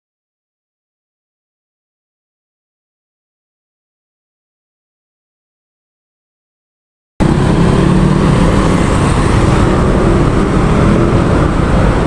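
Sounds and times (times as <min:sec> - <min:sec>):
loud road traffic rumble: 0:07.2 - 0:12.0.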